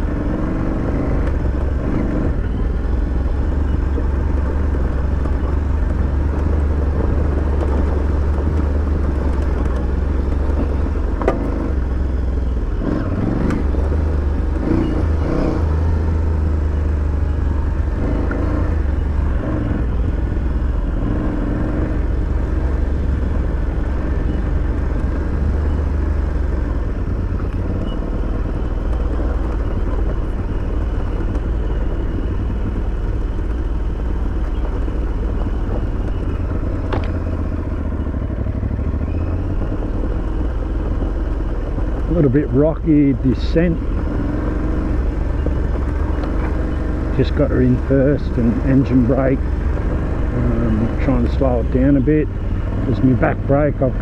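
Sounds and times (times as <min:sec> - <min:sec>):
motorcycle engine running: 0:00.0 - 0:54.0
sharp knocks and rattles: 0:21.6 - 0:42.8.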